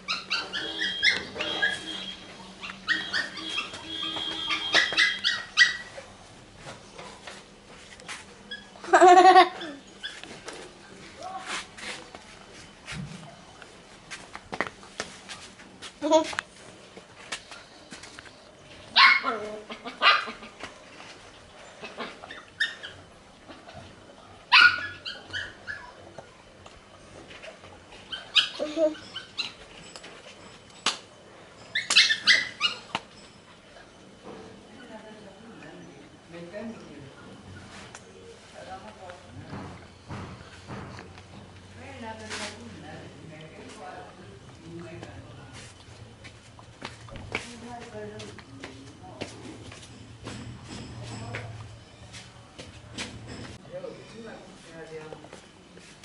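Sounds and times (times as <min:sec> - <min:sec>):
pet animal whimpering and yelping: 0:00.0 - 0:03.8.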